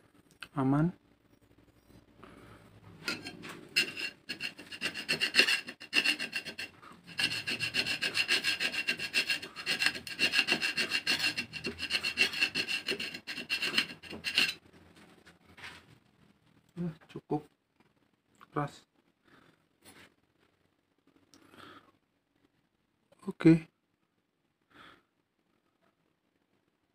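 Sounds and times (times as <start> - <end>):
metal scraping knife blade: 3.0 - 14.6.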